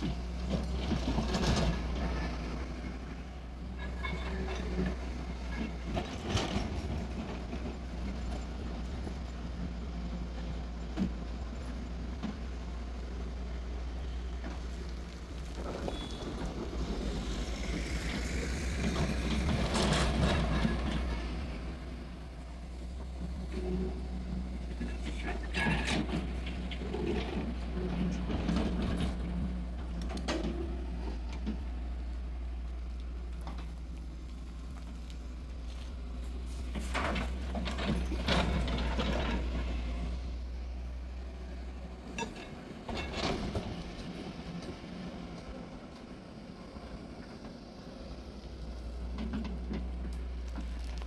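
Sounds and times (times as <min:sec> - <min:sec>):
excavator diesel engine humming: 0:00.0 - 0:51.0
soil and stones clattering: 0:14.1 - 0:22.1.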